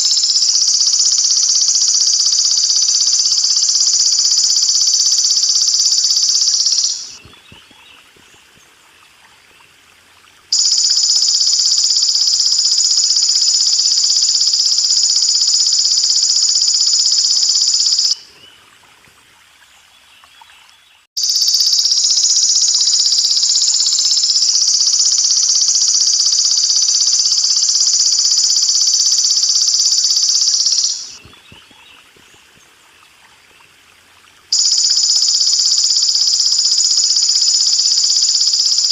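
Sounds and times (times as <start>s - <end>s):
grasshopper high-pitched buzz: 0.0s - 7.2s, 10.5s - 18.2s, 21.2s - 31.2s, 34.5s - 38.9s
faint water trickle: 3.0s - 17.5s, 18.1s - 21.1s, 31.2s - 38.2s.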